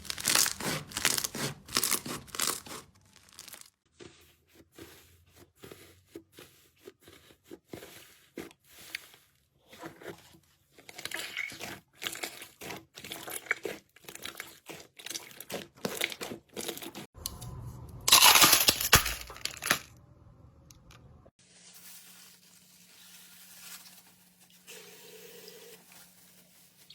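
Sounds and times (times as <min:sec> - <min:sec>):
crunchy slime crackling and popping: 0:00.0 - 0:03.8.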